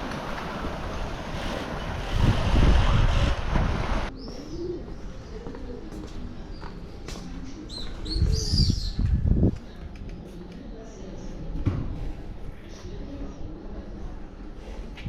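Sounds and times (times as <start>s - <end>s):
wind rushing on microphone: 1.1s - 4.1s, 8.1s - 9.7s
birds chirping: 4.1s - 9.0s
birds cooing: 4.2s - 6.1s.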